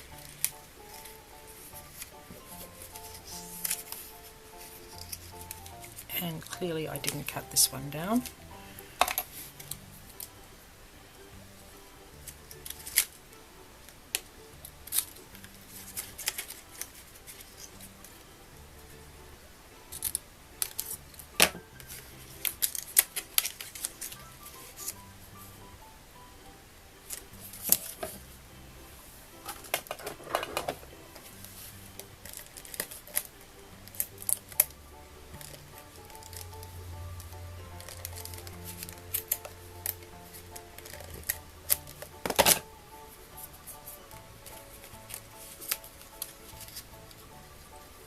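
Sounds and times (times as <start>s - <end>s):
paper rustling: 0.0s - 10.3s, 14.8s - 18.2s, 19.9s - 25.0s, 29.4s - 34.7s, 35.4s - 42.7s, 43.4s - 47.2s
soft background music: 0.0s - 48.0s
scissors snipping cardstock: 37.8s - 42.6s, 44.4s - 46.8s.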